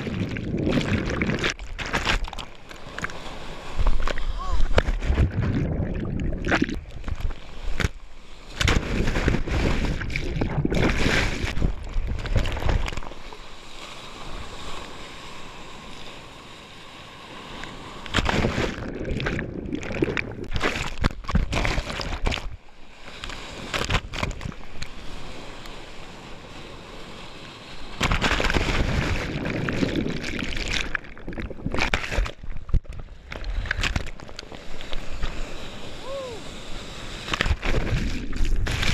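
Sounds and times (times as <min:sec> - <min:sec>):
ocean water sloshing: 0:00.0 - 0:38.9
surf rushing: 0:33.4 - 0:38.9.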